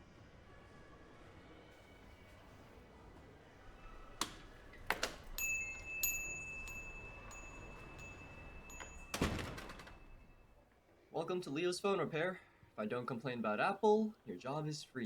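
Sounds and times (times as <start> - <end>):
small bell ringing: 5.3 - 10.6.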